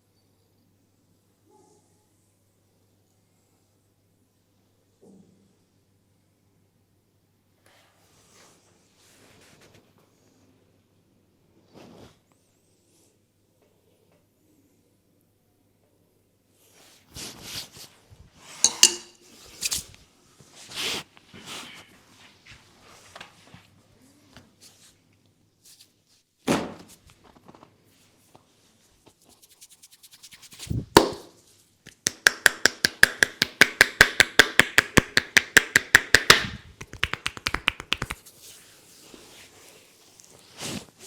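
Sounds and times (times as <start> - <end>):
hands slapping a head: 29.9 - 38.3
fast tapping strikes on head: 31.0 - 31.2, 32.0 - 38.2.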